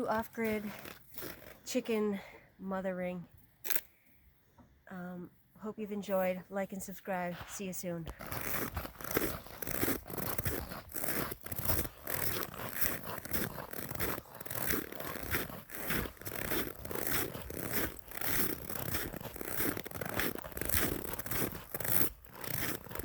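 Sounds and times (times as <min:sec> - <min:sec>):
crunching footsteps: 0:00.0 - 0:01.7, 0:07.4 - 0:23.0.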